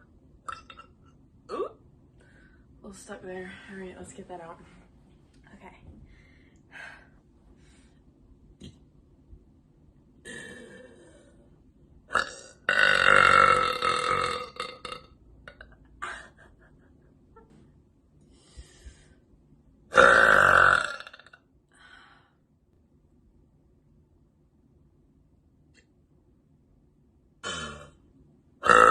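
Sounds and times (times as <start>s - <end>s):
woman burping loudly: 0.4s - 1.8s, 10.2s - 11.5s, 12.1s - 16.2s, 19.9s - 21.4s, 27.4s - 28.0s, 28.6s - 28.9s.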